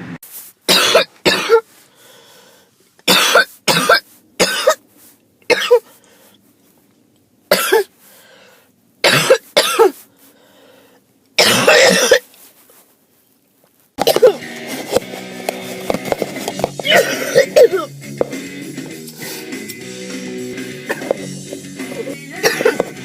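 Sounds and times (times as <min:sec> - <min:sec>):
person coughing harshly: 0:00.7 - 0:01.7, 0:03.1 - 0:04.8, 0:05.5 - 0:05.9, 0:07.5 - 0:07.9, 0:09.0 - 0:10.0, 0:11.4 - 0:12.3, 0:14.0 - 0:14.4, 0:16.7 - 0:18.0, 0:20.8 - 0:21.3, 0:21.9 - 0:23.0
faint breaths drawn in: 0:01.6 - 0:02.8, 0:05.8 - 0:06.6, 0:07.9 - 0:08.8, 0:10.0 - 0:11.2, 0:19.1 - 0:19.6.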